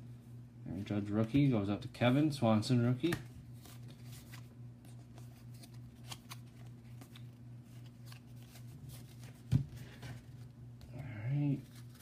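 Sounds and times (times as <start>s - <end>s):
faint steady hum: 0.0s - 12.0s
cards flipping and sliding: 3.0s - 10.5s, 11.6s - 12.0s.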